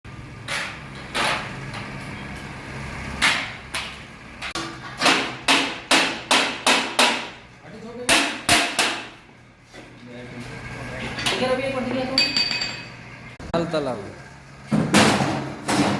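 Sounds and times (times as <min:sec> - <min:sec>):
hammer striking metal: 0:03.2 - 0:07.4, 0:08.1 - 0:09.2.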